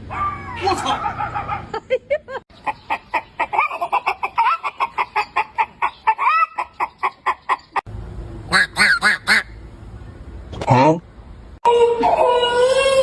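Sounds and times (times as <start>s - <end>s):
chicken clucking and cackling: 2.5s - 7.8s, 11.6s - 13.0s
chicken squawks: 2.6s - 7.7s, 8.5s - 9.5s.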